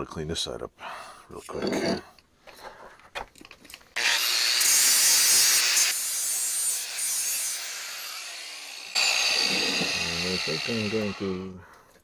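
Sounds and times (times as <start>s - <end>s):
power grinder grinding metal: 4.0s - 11.5s.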